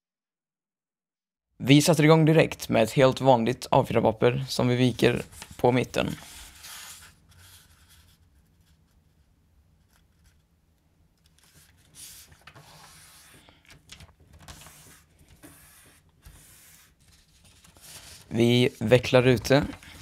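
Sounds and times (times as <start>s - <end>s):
paper rustling and rubbing: 4.8s - 10.4s, 11.4s - 20.0s.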